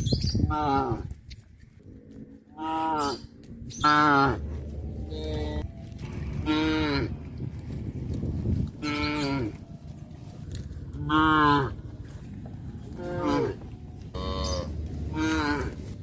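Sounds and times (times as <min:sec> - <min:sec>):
cattle mooing: 0:02.1 - 0:07.2, 0:10.9 - 0:11.9, 0:12.9 - 0:16.0
steady low rumble: 0:03.2 - 0:16.0.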